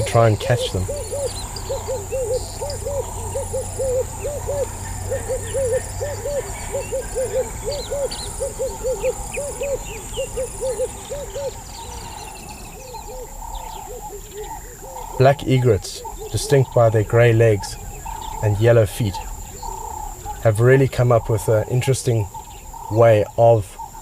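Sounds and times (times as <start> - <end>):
animal hooting calls: 0.0 - 20.6
bird chirps: 0.0 - 24.0
high insect drone: 0.0 - 24.0.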